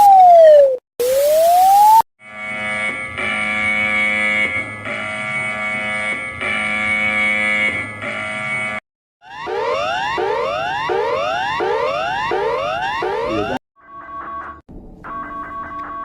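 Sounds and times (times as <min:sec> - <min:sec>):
two-pitch electronic alarm tone: 0:00.0 - 0:14.6.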